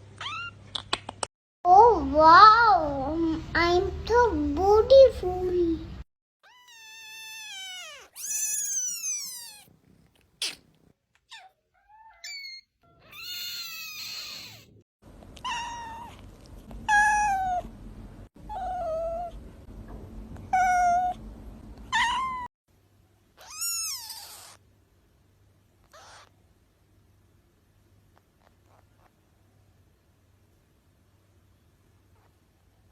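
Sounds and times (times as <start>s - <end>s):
kittens meowing: 6.4s - 9.7s, 11.3s - 14.8s, 25.9s - 26.3s.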